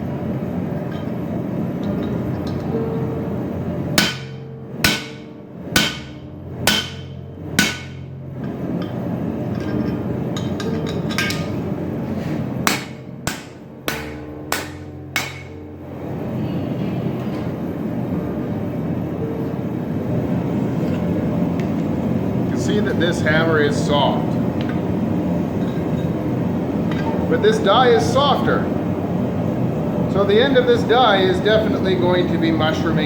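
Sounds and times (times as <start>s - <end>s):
steady background rush: 0.0s - 33.0s
hammer striking metal: 4.0s - 11.7s, 12.6s - 15.9s.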